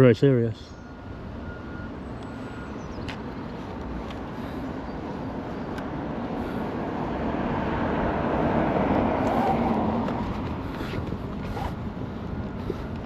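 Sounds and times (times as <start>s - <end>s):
vehicle passing by: 3.6s - 13.0s.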